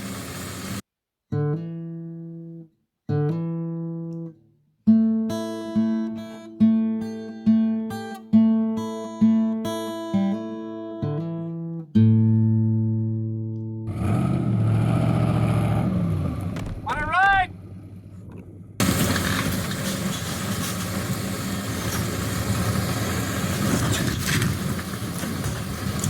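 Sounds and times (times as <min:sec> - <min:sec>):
plucked guitar music: 0:01.3 - 0:14.0.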